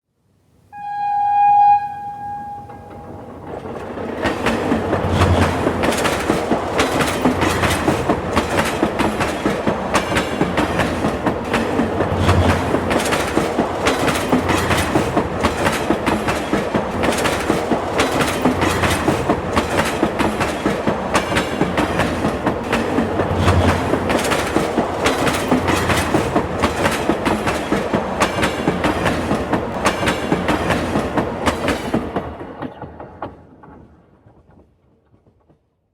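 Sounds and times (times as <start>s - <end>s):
train horn blast: 0.7s - 3.4s
train rumble: 0.8s - 35.6s
wheels clacking over rail joints: 2.5s - 35.6s.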